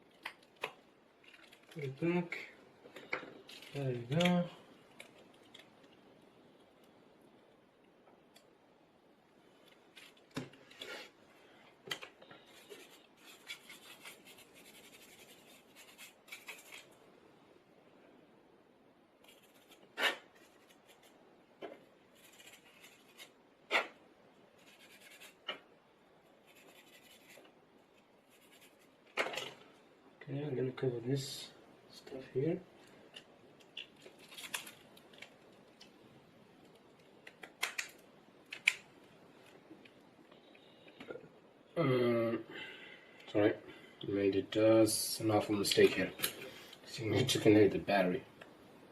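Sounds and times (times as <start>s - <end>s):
scratchy rustle: 12.4s - 17.0s, 22.1s - 23.9s, 24.6s - 25.4s.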